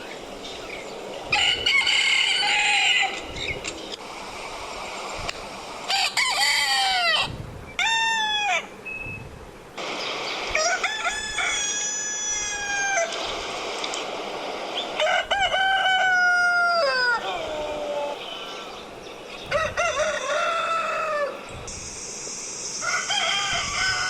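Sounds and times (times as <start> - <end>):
rooster crowing: 1.3 - 3.3, 5.9 - 8.8, 10.5 - 13.2, 15.0 - 18.3, 19.4 - 21.4, 22.8 - 24.0.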